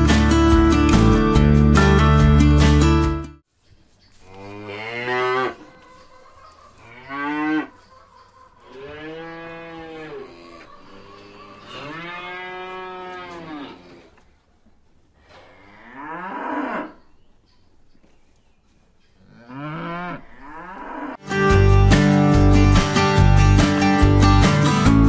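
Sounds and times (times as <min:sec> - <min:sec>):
strummed acoustic guitar music: 0:00.0 - 0:03.4, 0:21.2 - 0:25.0
cows mooing: 0:04.3 - 0:05.8, 0:06.8 - 0:07.8, 0:08.6 - 0:14.2, 0:15.2 - 0:17.0, 0:19.2 - 0:21.2.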